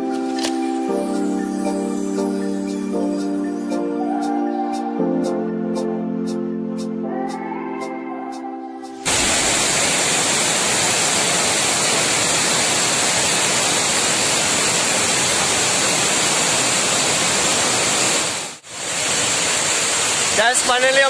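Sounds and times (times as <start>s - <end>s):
background music: 0.0s - 9.1s
waterfall rushing: 9.0s - 21.0s.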